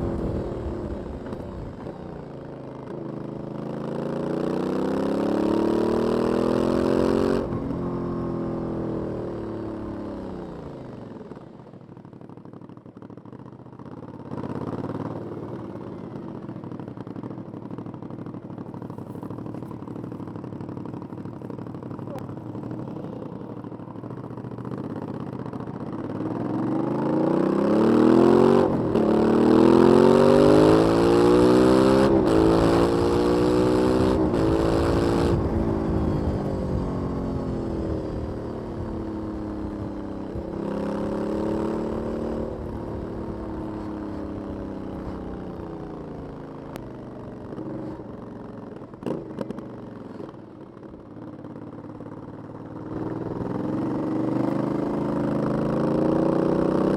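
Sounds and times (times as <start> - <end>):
motorcycle accelerating: 0.0 - 56.9.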